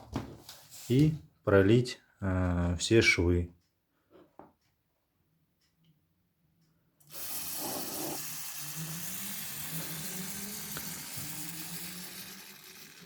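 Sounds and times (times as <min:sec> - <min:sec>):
aerosol can spraying: 0:07.1 - 0:13.0.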